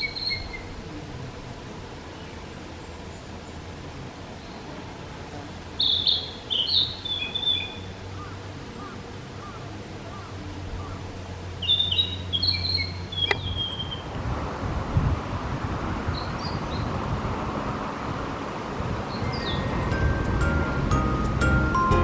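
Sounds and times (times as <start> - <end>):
forest background rumble: 0.0 - 22.0
sharp click: 13.2 - 13.5
bird singing high notes: 19.1 - 22.0.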